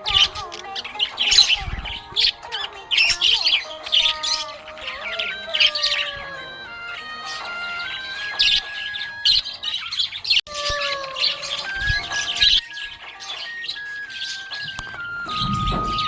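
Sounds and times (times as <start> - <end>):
budgerigars chirping: 0.0 - 16.0
music with long held notes: 11.1 - 16.0.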